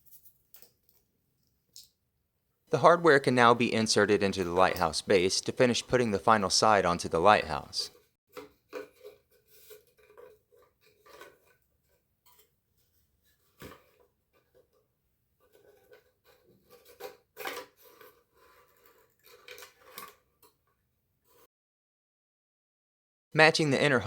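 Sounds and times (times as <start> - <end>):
small parts clicking and tapping: 0.0 - 2.0.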